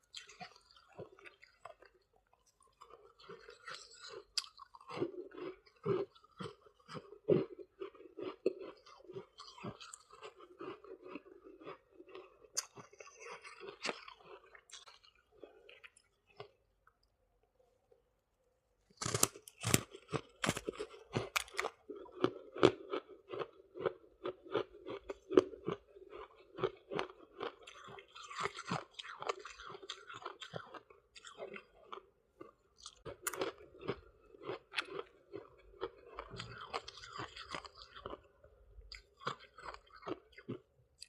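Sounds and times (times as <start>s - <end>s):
person crunching ice: 18.9s - 30.9s, 33.1s - 38.2s.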